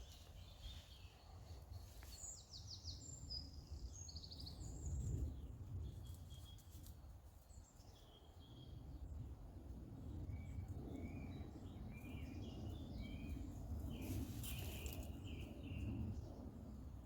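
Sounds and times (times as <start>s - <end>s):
small birds chirping: 0.0s - 9.3s, 10.1s - 16.5s
rustling noise: 14.0s - 15.2s.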